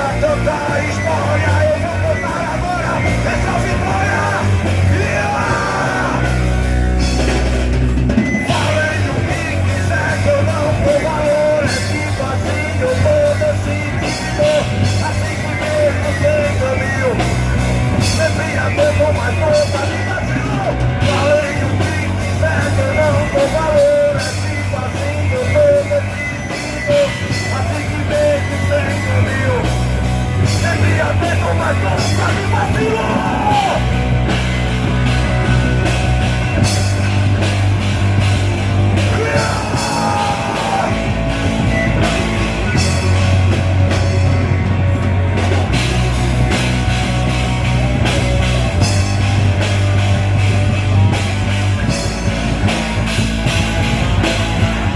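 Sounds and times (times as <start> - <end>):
person singing: 0.0 - 6.7, 8.4 - 17.2, 18.0 - 29.8, 30.4 - 34.0, 39.0 - 43.2
heavy bass line: 0.0 - 54.9
rock band playing: 0.0 - 54.9.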